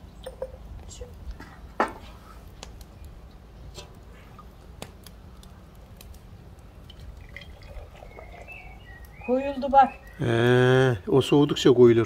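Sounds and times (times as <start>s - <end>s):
liquid dripping and filling jars: 6.8s - 8.8s.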